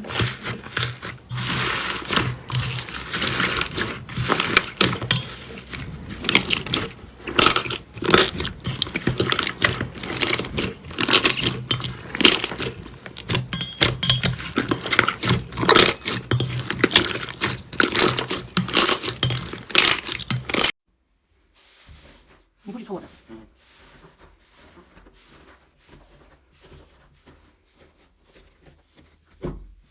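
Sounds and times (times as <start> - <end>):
slime crackling and popping: 0.0 - 20.8.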